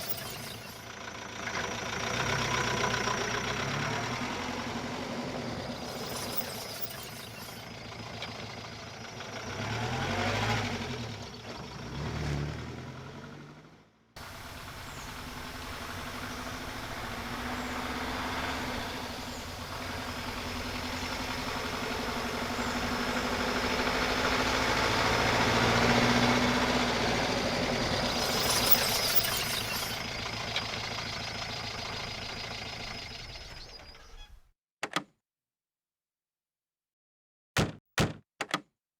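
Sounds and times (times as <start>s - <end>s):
car engine running: 13.0s - 33.8s.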